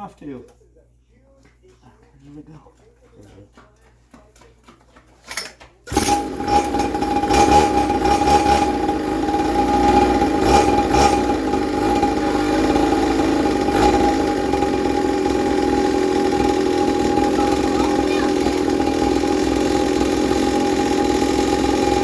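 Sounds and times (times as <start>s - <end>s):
small quad engine running: 5.9s - 22.0s.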